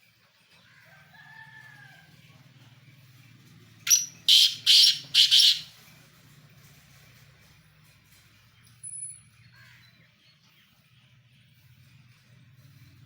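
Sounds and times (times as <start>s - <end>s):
pheasant calling: 3.9s - 5.7s.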